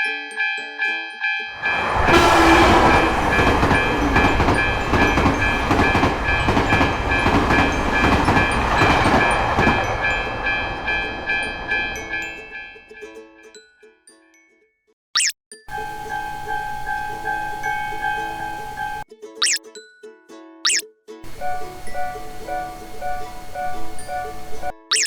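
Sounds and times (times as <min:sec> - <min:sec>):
railroad crossing bell clanging: 0:00.0 - 0:13.0, 0:15.7 - 0:19.0, 0:21.3 - 0:25.0
train rumbling and clattering past: 0:01.5 - 0:12.9, 0:15.7 - 0:19.0, 0:21.3 - 0:24.8.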